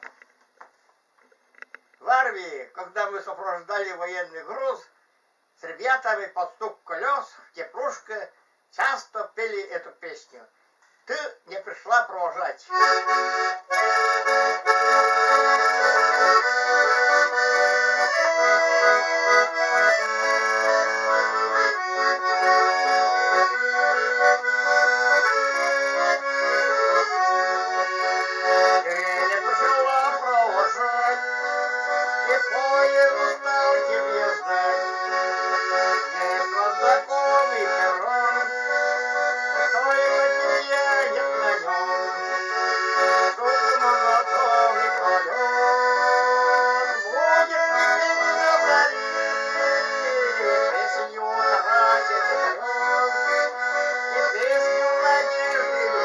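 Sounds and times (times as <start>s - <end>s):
accordion playing a melody: 12.7s - 56.0s.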